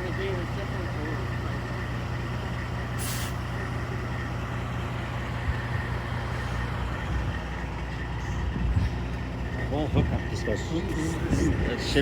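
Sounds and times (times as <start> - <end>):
truck engine drone: 0.0 - 12.0
short sharp hiss: 3.0 - 3.4.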